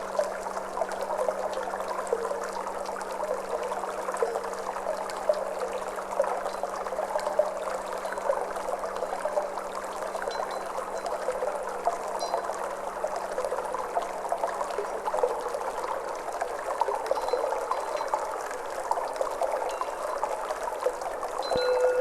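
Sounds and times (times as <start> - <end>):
water trickling and splashing: 0.0 - 22.0
faint low tone: 21.5 - 22.0.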